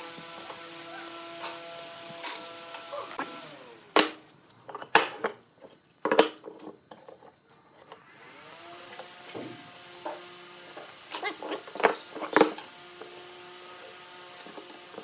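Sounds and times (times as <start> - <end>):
power tool motor: 0.0 - 4.3, 7.8 - 15.0.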